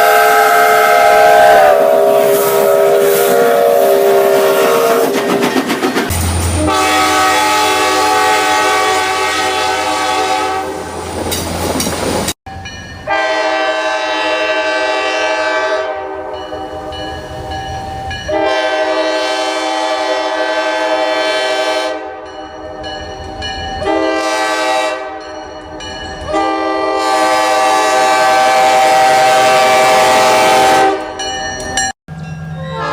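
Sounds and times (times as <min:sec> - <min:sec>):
locomotive air horn blasts: 0:00.0 - 0:05.2, 0:06.4 - 0:10.9, 0:13.1 - 0:16.6, 0:18.3 - 0:22.3, 0:23.8 - 0:25.3, 0:26.3 - 0:31.3, 0:32.6 - 0:32.9.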